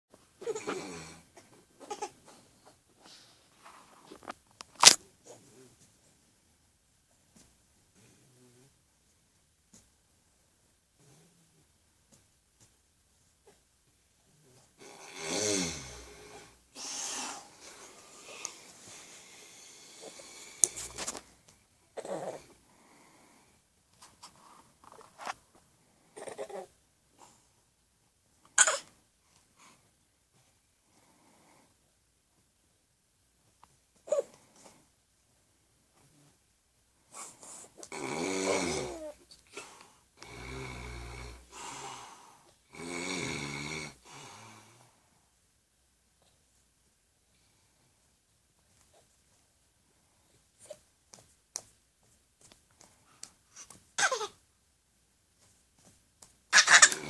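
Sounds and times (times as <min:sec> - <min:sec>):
man snoring: 0:14.8 - 0:17.5, 0:37.9 - 0:39.1, 0:40.2 - 0:44.8
baby squealing: 0:56.6 - 0:57.0.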